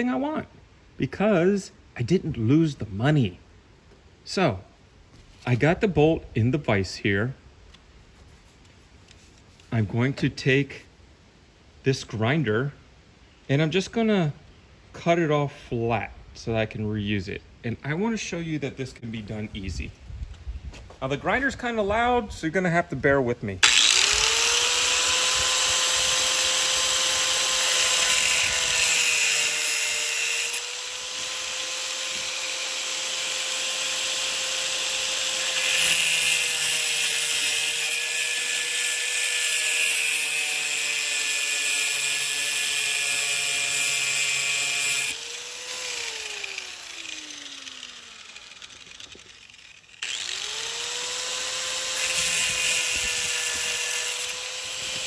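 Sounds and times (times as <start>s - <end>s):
angle grinder cutting metal: 23.6s - 55.0s.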